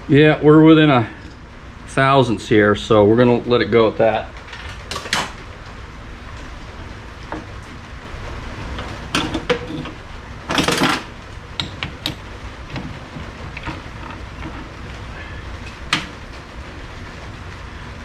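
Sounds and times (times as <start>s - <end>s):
steady low hum: 0.0s - 18.0s
metal tools clinking and knocking: 9.1s - 14.9s.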